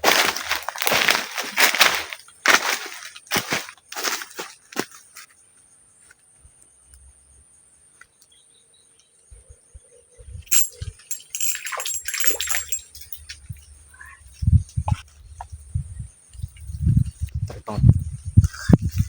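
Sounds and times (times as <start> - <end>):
water splashing: 11.1 - 13.2.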